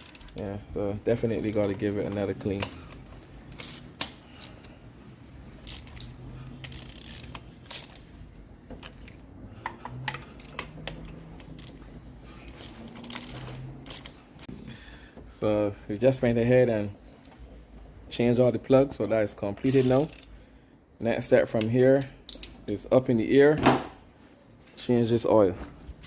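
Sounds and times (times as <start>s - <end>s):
metallic clicks of hand tools: 21.6s - 22.7s.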